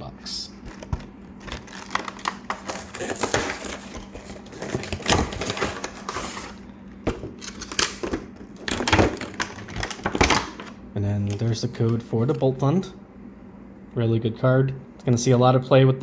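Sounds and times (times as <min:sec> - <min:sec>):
packaging rustling and crinkling: 0:00.6 - 0:10.7
cardboard ripping: 0:01.6 - 0:06.6.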